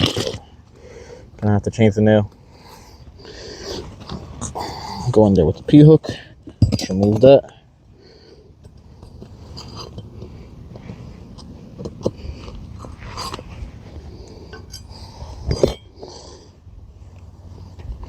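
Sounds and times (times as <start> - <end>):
pry tool scraping shingle: 8.9 - 16.3.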